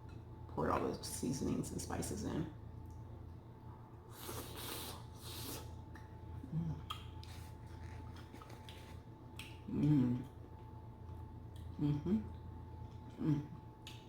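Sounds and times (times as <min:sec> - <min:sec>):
soft chewing: 0:04.1 - 0:14.0.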